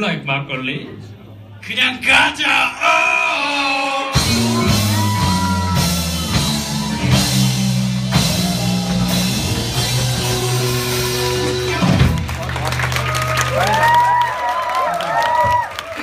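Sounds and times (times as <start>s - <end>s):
bass line: 4.1s - 14.1s
drum beat: 4.2s - 12.5s.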